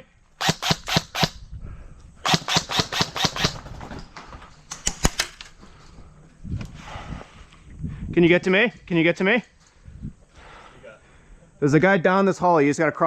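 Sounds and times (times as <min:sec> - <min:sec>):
airsoft gun shots: 0:00.4 - 0:01.4, 0:02.2 - 0:03.7.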